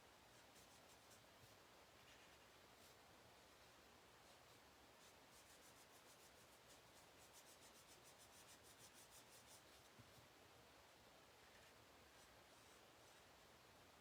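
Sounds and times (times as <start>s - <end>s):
marker scratching on card: 5.0s - 9.9s.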